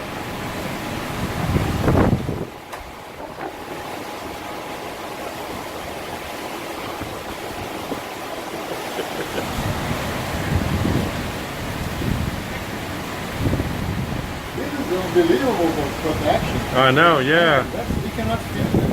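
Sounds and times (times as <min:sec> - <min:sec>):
strong wind blowing: 0:00.0 - 0:18.9
wind buffeting microphone: 0:00.0 - 0:18.9.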